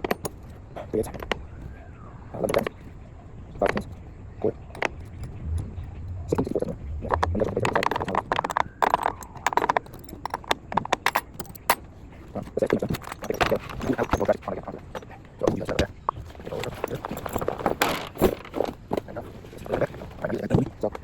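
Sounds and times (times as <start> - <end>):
metal wrenches clinking: 4.7 - 21.0.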